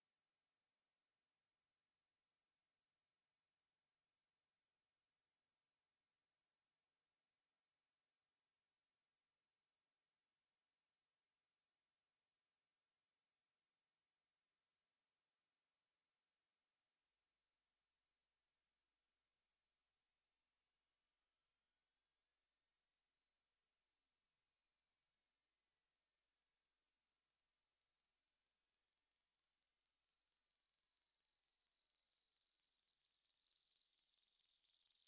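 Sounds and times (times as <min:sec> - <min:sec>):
high sine tone sliding down: 0:14.5 - 0:35.0.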